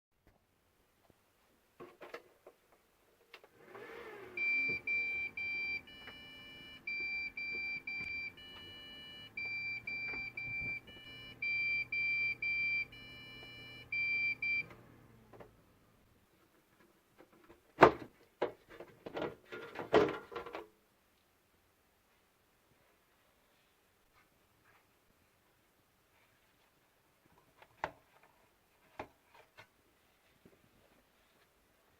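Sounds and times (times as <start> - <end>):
two-pitch short beeps: 4.4 - 14.7.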